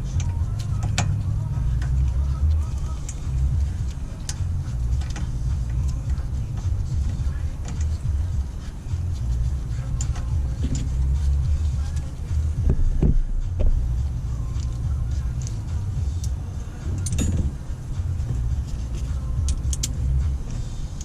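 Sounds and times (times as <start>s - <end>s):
low rumble: 0.0s - 21.0s
hand tools clinking on metal: 16.9s - 17.6s.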